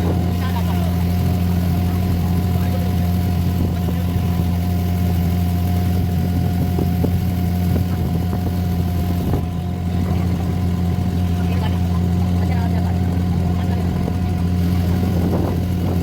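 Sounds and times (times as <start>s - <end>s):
boat engine humming: 0.0s - 16.0s.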